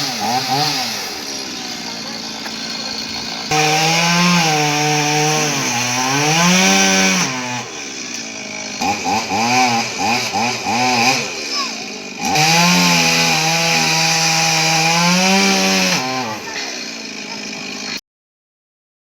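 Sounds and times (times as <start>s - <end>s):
chainsaw revving and cutting wood: 0.0s - 18.0s.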